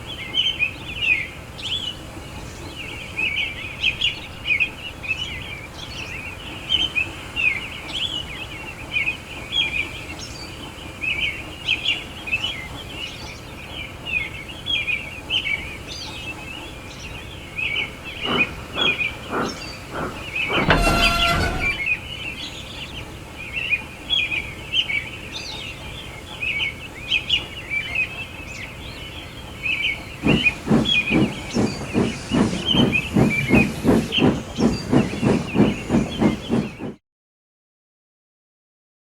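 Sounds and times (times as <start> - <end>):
birds chirping: 12.6 - 23.6, 25.4 - 36.9
steam hissing: 17.0 - 22.1, 29.9 - 37.0
locomotive puffing: 17.3 - 22.1, 30.1 - 37.0
steam whistle blast: 20.6 - 22.0.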